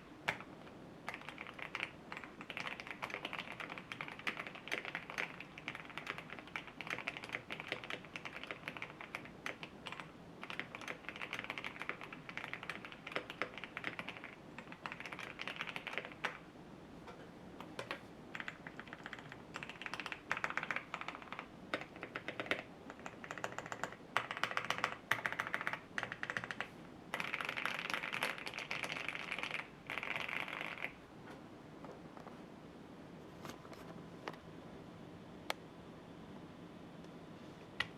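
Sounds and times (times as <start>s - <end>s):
typing on mechanical keyboard: 1.1s - 16.4s, 18.3s - 31.0s.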